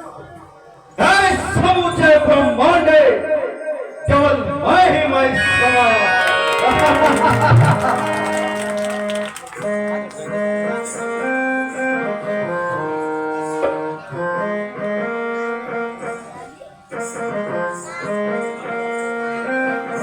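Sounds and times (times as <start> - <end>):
percussion hits: 5.4 - 9.9
slow keyboard melody: 5.4 - 20.0.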